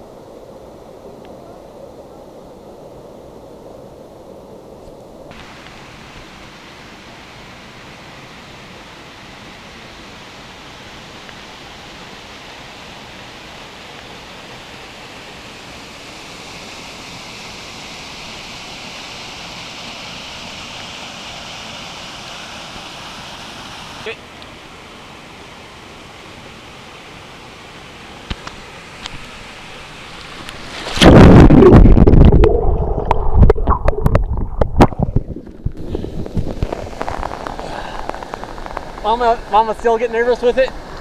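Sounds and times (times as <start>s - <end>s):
rushing water: 5.3s - 41.0s.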